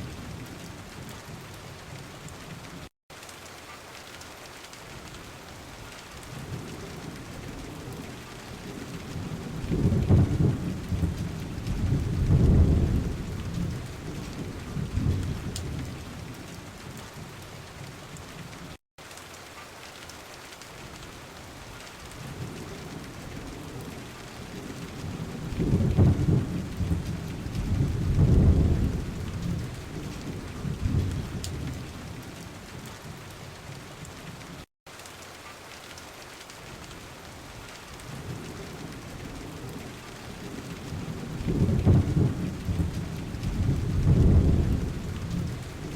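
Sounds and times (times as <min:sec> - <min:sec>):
rain falling steadily: 0:00.0 - 0:45.9
thunder rumbling: 0:06.4 - 0:16.5, 0:22.2 - 0:33.2, 0:38.1 - 0:45.9.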